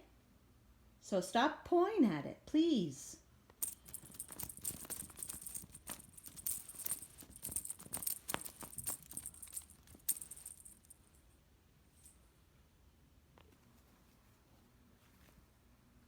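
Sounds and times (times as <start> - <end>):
cat toy rattling and clicking: 3.6 - 11.0.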